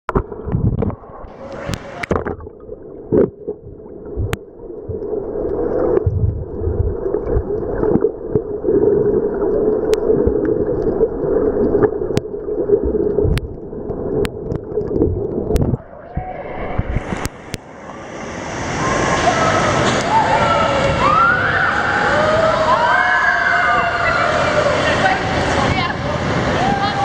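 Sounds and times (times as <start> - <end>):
boat motor and water rumble: 0.1 - 27.0
wind on microphone: 6.0 - 7.5, 14.9 - 17.6.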